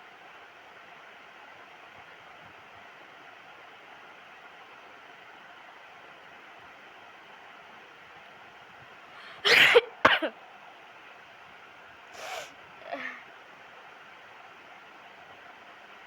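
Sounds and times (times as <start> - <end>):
faint breathy sounds: 9.1 - 9.6, 12.1 - 13.3
woman sneezing: 9.2 - 10.3, 12.2 - 13.2.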